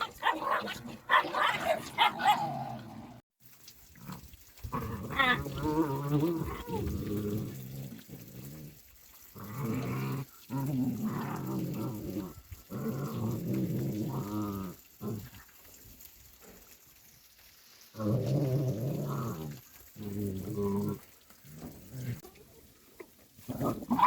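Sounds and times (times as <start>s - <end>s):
puppies growling: 0.0s - 3.2s, 4.0s - 15.4s, 18.0s - 22.3s.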